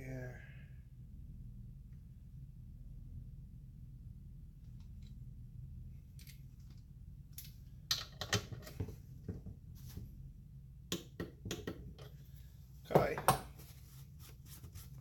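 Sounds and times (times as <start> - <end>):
low hum: 0.0 - 10.9.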